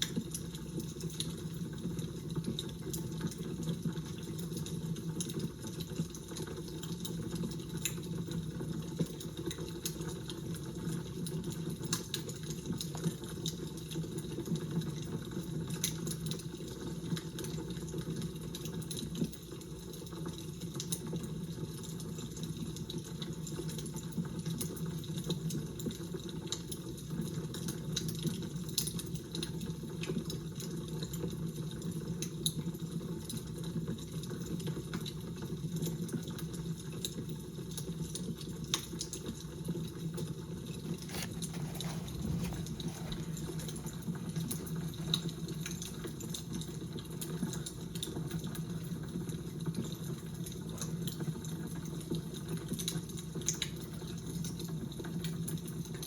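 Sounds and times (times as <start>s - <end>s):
fire crackling: 39.9s - 46.9s.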